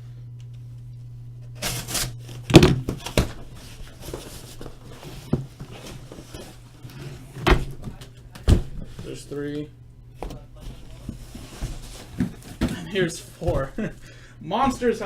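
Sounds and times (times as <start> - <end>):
cardboard rustling and scraping: 2.9 - 8.0, 10.2 - 15.0
thumps of boxes being handled: 4.0 - 6.5, 7.4 - 9.2, 10.2 - 13.9.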